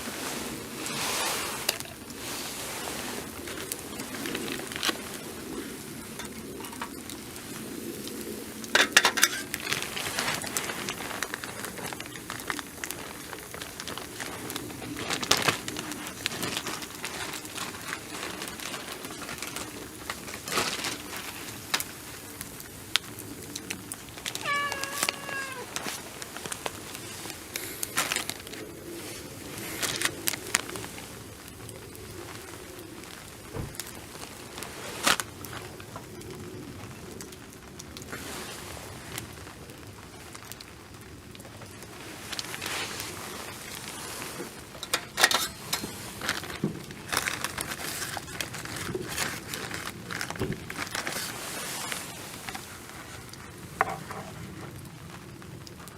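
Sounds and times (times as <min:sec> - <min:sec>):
cat meowing: 0:24.3 - 0:25.9.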